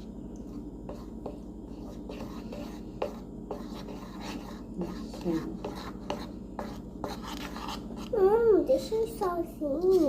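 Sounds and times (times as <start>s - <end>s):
spoon scraping a bowl: 0.4s - 8.2s.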